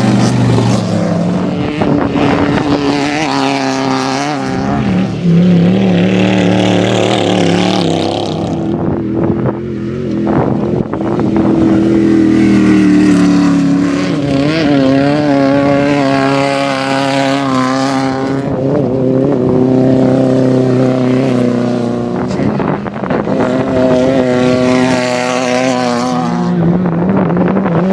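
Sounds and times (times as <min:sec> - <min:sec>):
race vehicle engines revving: 0:00.0 - 0:27.9.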